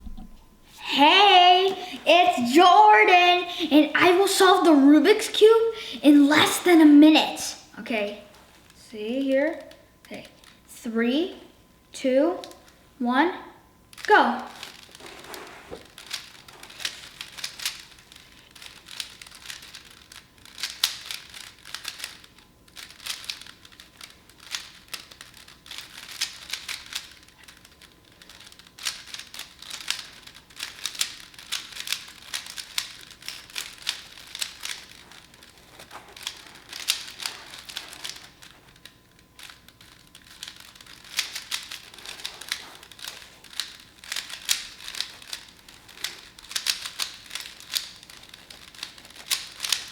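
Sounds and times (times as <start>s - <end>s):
puzzle cube clicking: 13.9s - 49.9s.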